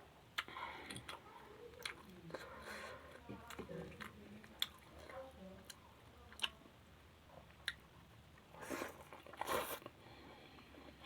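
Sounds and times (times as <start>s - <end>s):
person chewing food: 0.3s - 1.2s, 1.8s - 6.6s, 8.5s - 11.0s.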